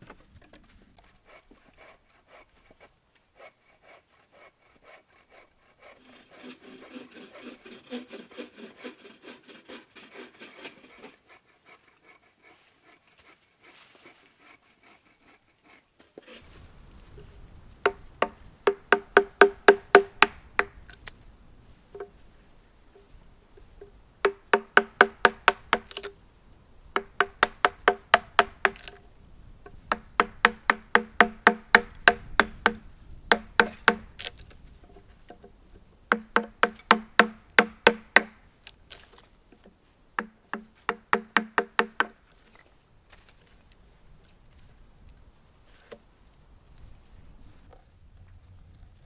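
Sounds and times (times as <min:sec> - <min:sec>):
hammer blows on wood: 0:17.7 - 0:21.0, 0:23.6 - 0:26.2, 0:26.9 - 0:29.0, 0:29.7 - 0:34.4, 0:36.1 - 0:38.5, 0:40.2 - 0:42.2.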